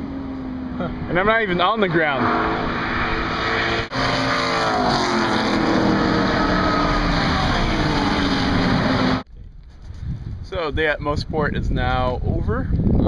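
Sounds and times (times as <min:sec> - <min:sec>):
race car engines passing by: 0:00.0 - 0:09.2.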